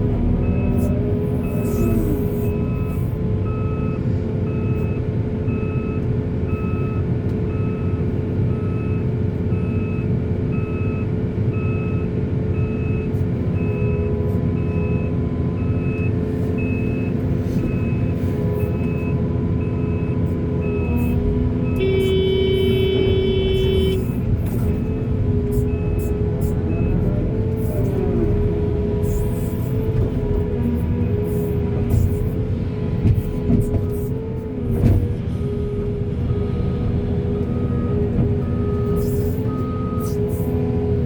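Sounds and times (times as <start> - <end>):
heavy diesel machinery running: 0.0 - 41.0
reversing alarm beeping: 12.6 - 24.2, 37.4 - 40.5.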